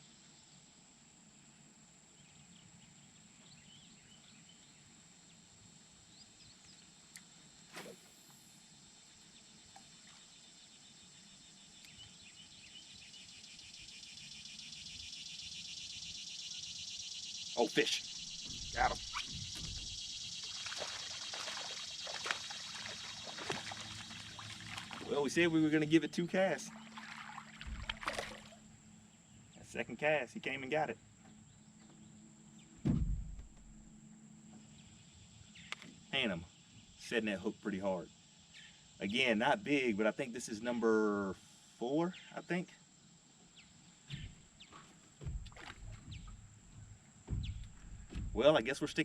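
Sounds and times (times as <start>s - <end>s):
faint bird chirps: 6.0s - 32.8s, 34.4s - 49.0s
steady high hiss: 7.0s - 9.7s, 12.7s - 24.4s, 34.8s - 44.0s
high insect-like tone: 12.8s - 28.7s
water splashing: 17.6s - 25.7s, 26.6s - 28.6s, 45.2s - 48.9s.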